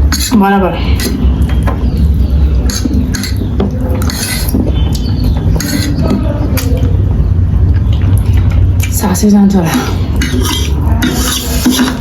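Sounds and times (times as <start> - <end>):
utensils clinking against a dish: 0.1 - 1.8, 2.6 - 6.9, 9.6 - 12.0.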